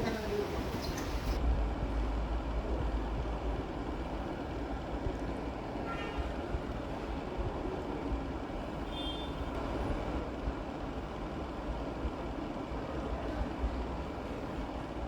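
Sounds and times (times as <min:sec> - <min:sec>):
low rumbling background noise: 0:00.0 - 0:08.8.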